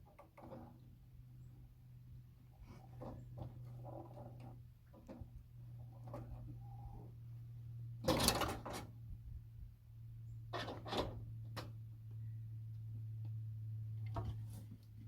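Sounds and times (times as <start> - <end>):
knocks and scrapes of hand work: 14.1 - 14.8.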